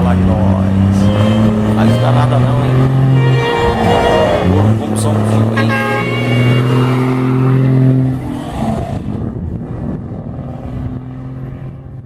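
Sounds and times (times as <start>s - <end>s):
truck engine brake drone: 0.9s - 7.9s.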